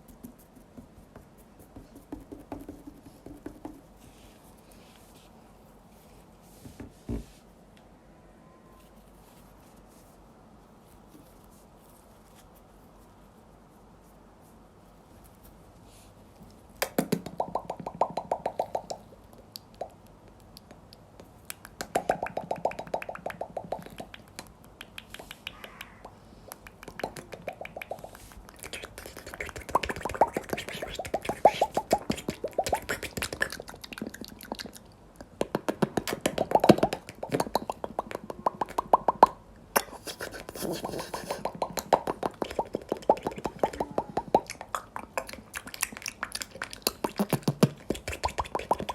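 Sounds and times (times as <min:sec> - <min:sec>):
faint hiss: 0:36.2 - 0:48.9.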